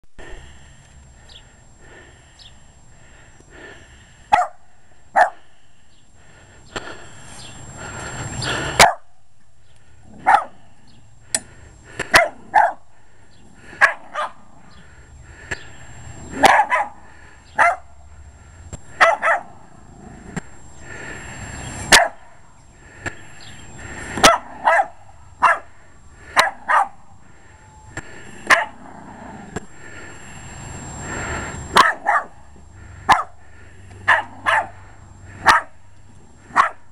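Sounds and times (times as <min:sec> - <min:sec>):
dog barking: 0:04.3 - 0:04.6, 0:05.2 - 0:05.4, 0:08.8 - 0:09.1, 0:10.2 - 0:10.6, 0:12.1 - 0:12.8, 0:13.8 - 0:14.4, 0:16.4 - 0:17.0, 0:17.6 - 0:17.9, 0:19.0 - 0:19.6, 0:21.9 - 0:22.2, 0:24.2 - 0:25.7, 0:26.4 - 0:27.0, 0:28.5 - 0:28.8, 0:31.8 - 0:32.4, 0:33.1 - 0:33.4, 0:34.1 - 0:34.8, 0:35.4 - 0:35.8, 0:36.5 - 0:36.9
rush of noise: 0:27.7 - 0:35.6.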